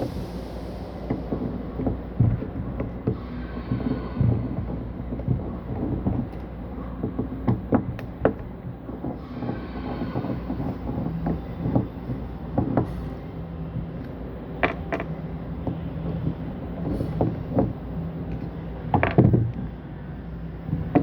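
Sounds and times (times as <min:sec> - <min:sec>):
low machine hum: 0:00.0 - 0:21.0.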